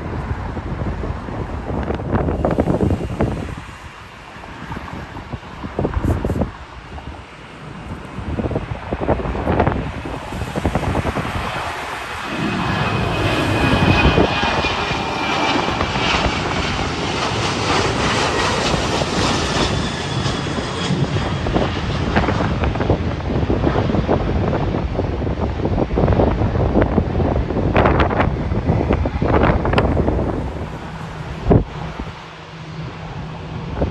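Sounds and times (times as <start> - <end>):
jet engine whine: 0.0 - 33.9
wind buffeting microphone: 0.0 - 33.9
jet noise rushing: 1.1 - 22.0.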